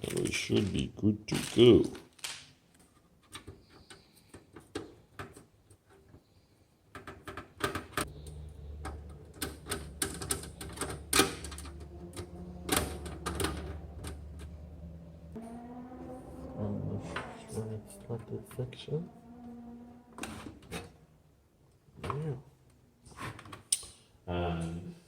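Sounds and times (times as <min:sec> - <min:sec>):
low steady hum: 0:08.1 - 0:21.5.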